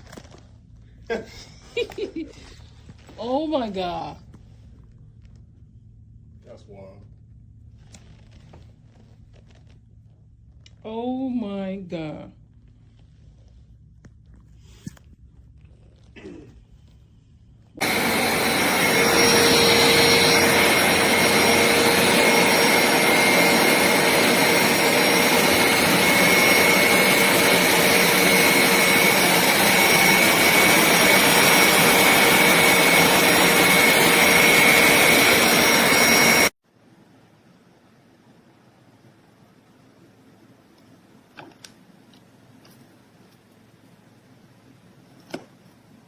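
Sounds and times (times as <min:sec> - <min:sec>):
carpet cleaner suction motor: 0:17.8 - 0:36.5.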